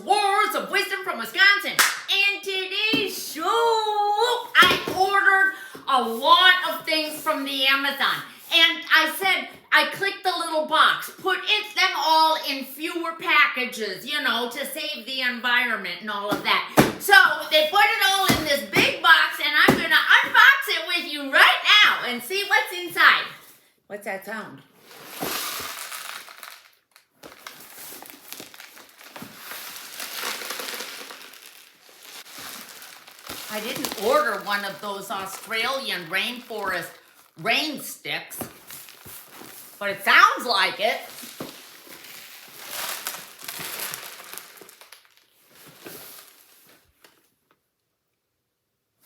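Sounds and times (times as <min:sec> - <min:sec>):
birdseed rattling in cardboard box: 0:28.4 - 0:33.5.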